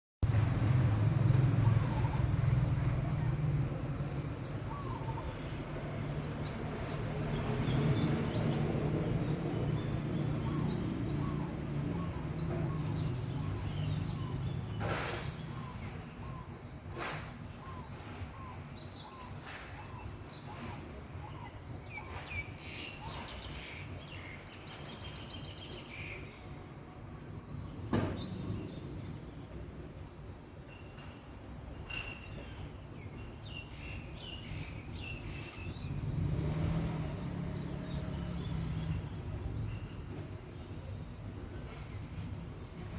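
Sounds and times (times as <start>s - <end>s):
traffic rumble: 0.2s - 42.9s
small birds chirping: 1.0s - 29.6s.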